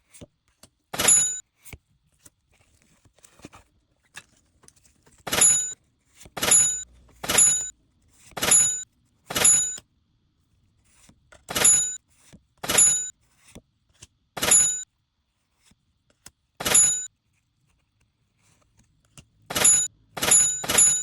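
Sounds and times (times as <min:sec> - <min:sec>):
card handling rustles and clicks: 0:00.1 - 0:08.6.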